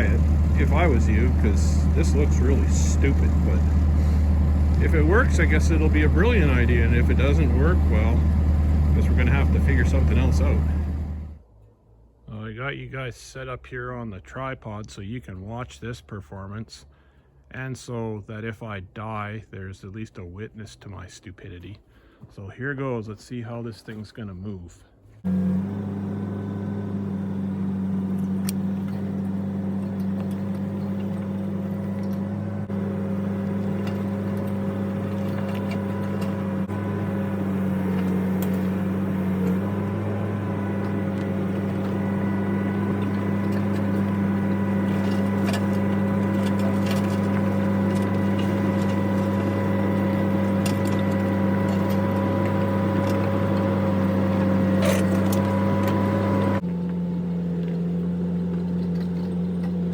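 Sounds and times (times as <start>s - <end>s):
diesel engine running: 0.0s - 11.5s, 25.2s - 59.9s.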